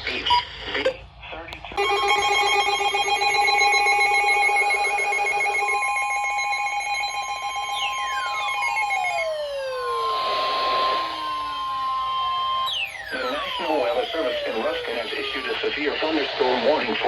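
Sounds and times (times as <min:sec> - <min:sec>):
chord of electronic tones: 0:01.8 - 0:15.6
falling pitch sweeps: 0:01.8 - 0:15.6
steady alarm tone: 0:01.8 - 0:15.6.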